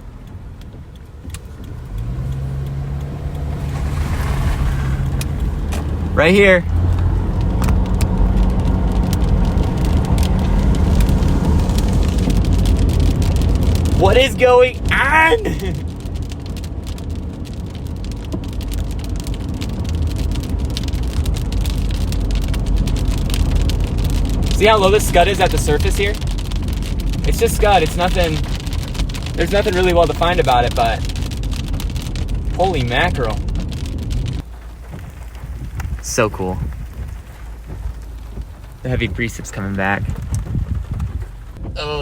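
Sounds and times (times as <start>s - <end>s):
raindrops ticking on car roof: 0.0s - 42.0s
road noise: 0.0s - 42.0s
low engine drone: 1.8s - 13.8s.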